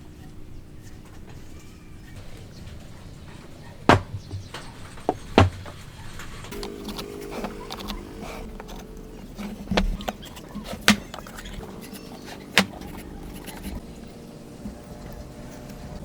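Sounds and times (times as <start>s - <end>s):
sharp knocks on timber: 3.9s - 5.8s.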